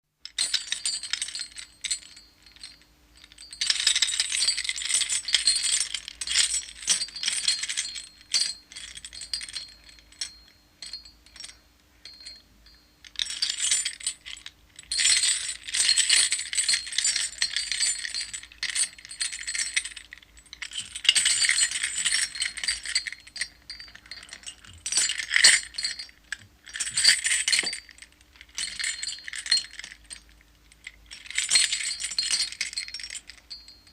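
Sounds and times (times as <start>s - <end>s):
metal chains rattling: 0.3s - 33.9s.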